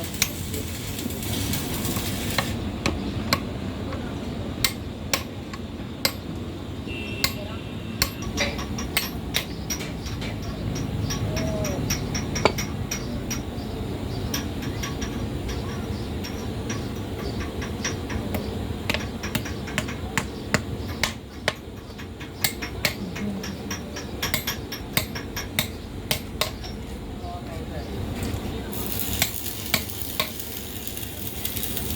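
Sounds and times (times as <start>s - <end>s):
low workshop noise: 0.0s - 31.9s
hammer tapping on metal: 4.6s - 6.4s, 7.2s - 26.9s, 28.8s - 31.9s.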